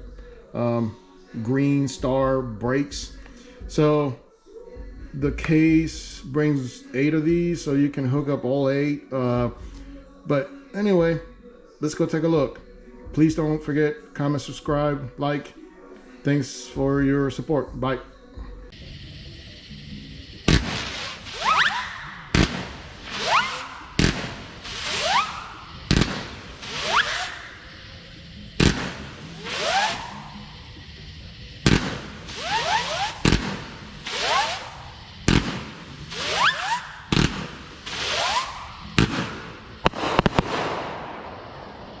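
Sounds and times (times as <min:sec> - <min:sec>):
hissing firework bursts: 0:18.7 - 0:42.0
firework launch thumps: 0:18.8 - 0:42.0
rising whistle of hummers: 0:18.8 - 0:42.0.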